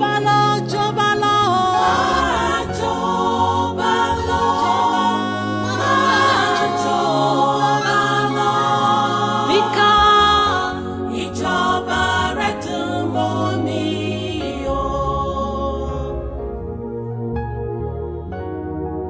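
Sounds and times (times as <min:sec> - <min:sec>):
choir singing harmonies: 0:00.0 - 0:18.8
held low notes: 0:00.0 - 0:19.0.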